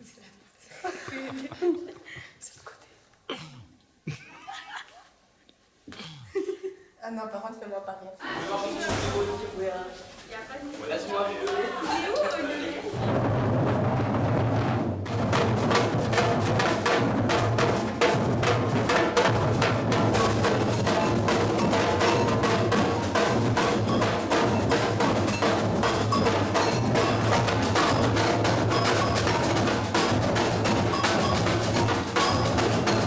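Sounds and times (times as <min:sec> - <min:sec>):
rapid snare drum strokes: 0:12.9 - 0:33.0.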